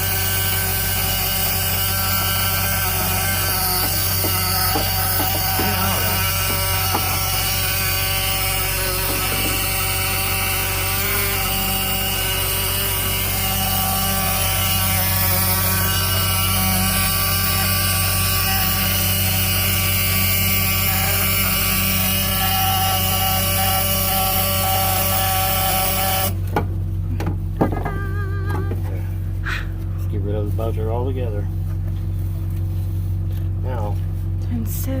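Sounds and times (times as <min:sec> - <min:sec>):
alarm buzzer buzzing: 0:00.0 - 0:26.4.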